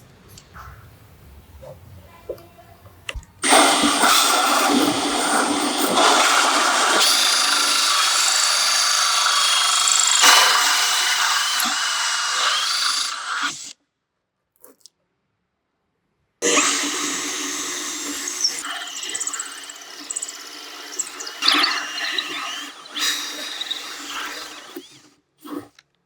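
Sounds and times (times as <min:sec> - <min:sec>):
wood router whining: 0:03.4 - 0:13.7, 0:16.4 - 0:25.6.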